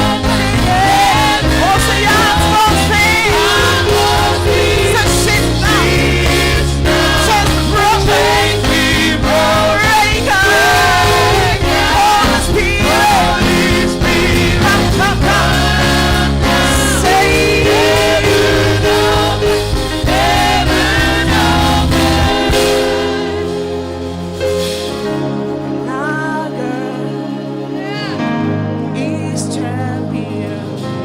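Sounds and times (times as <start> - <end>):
steady drum beat: 0.0 - 23.9
bass notes: 0.0 - 25.5
gospel choir singing: 0.0 - 31.0.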